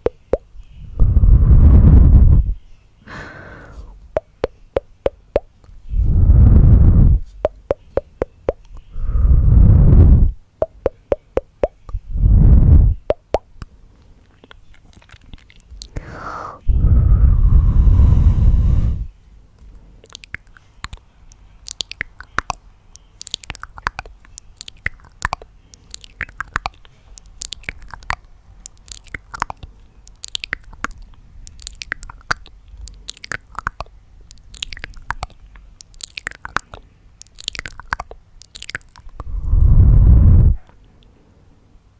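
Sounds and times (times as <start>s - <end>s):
wet mouth clicks and smacks: 0.0s - 0.6s, 3.8s - 5.8s, 7.2s - 8.9s, 10.6s - 12.0s, 13.0s - 16.1s, 19.6s - 39.4s
loud breath: 3.0s - 4.0s, 15.9s - 19.1s.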